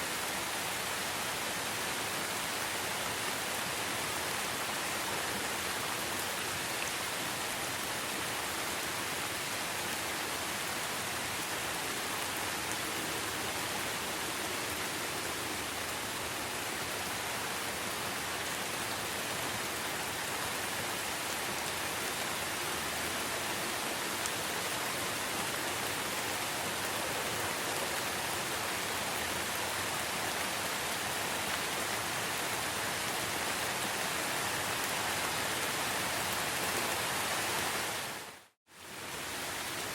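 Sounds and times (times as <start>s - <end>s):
steady rain hissing: 0.0s - 39.9s.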